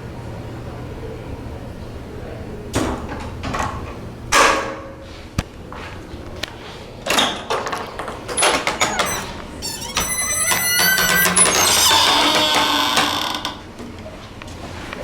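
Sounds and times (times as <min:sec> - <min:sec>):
door swishing movements: 0:08.3 - 0:13.6.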